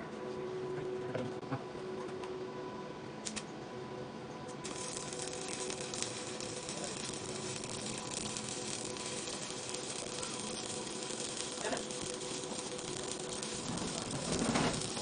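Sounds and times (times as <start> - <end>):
welding arc crackling and sizzling: 4.6 - 15.0.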